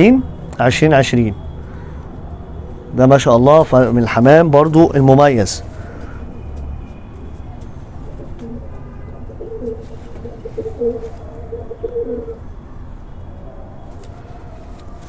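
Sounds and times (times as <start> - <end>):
pigeons cooing: 8.0 - 12.4.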